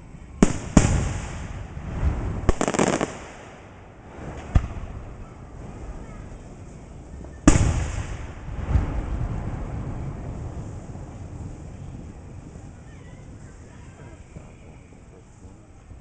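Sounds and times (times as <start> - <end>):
firework crackling: 0.0 - 16.0
firework bangs: 0.4 - 12.4.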